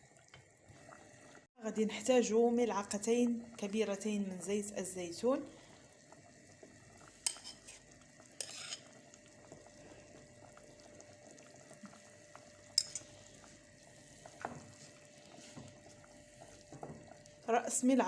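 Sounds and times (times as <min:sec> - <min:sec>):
pot simmering hiss: 0:00.0 - 0:18.0
spoon clinking on cookware: 0:08.4 - 0:08.9, 0:12.8 - 0:13.1.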